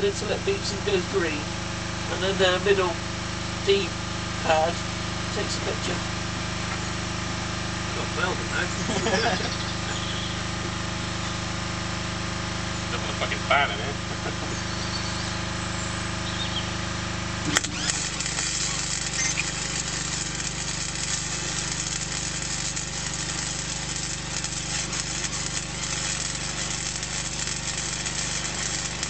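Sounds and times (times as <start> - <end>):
welding arc crackling: 0.0 - 13.4, 15.4 - 29.0
motor hum: 0.0 - 29.0
sharp click: 17.5 - 18.4.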